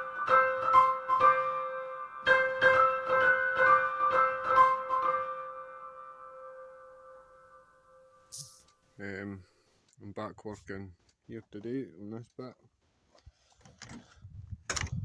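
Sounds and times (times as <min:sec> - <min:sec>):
quick keyboard melody: 0:00.0 - 0:08.2.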